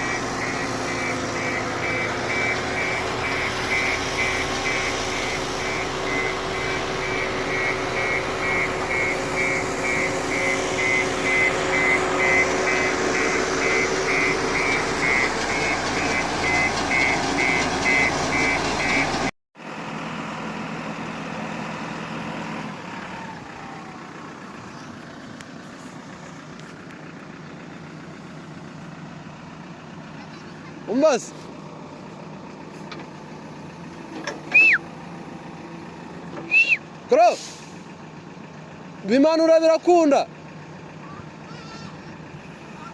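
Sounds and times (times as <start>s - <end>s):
reversing alarm beeping: 0.0s - 19.3s, 33.2s - 34.9s
construction vehicle engine: 0.0s - 42.9s.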